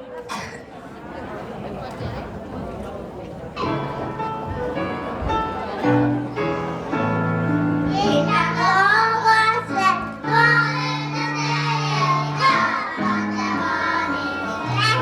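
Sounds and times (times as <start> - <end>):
child singing: 7.9 - 15.0.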